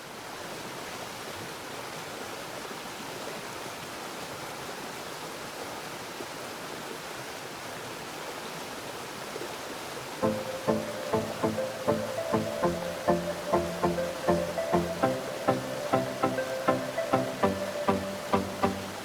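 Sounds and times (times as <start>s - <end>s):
water rushing: 9.4s - 19.0s.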